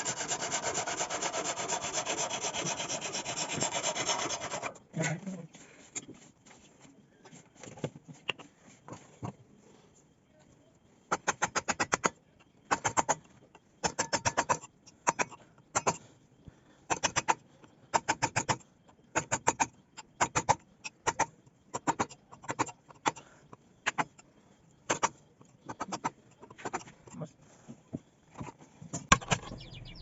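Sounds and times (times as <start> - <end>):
hand tool working wood: 0.0 - 4.8.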